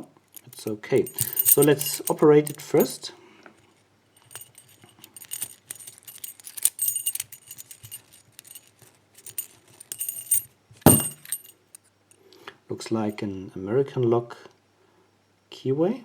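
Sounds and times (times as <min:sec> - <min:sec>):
keys jingling: 0:00.0 - 0:03.0, 0:04.2 - 0:11.8
key clicking in padlock: 0:00.4 - 0:02.9, 0:04.2 - 0:11.7
padlock clunk: 0:00.4 - 0:02.9, 0:04.2 - 0:11.5.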